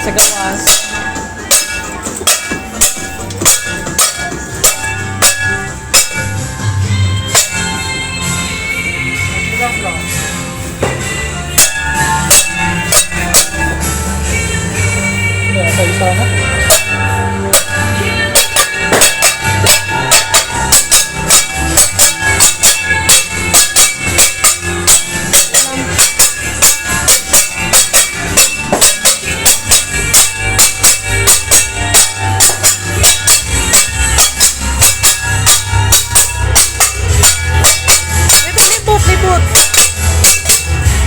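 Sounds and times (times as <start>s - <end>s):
rapid loud banging: 0.0s - 7.8s, 10.8s - 14.5s, 16.6s - 41.0s
music playing: 0.0s - 41.0s.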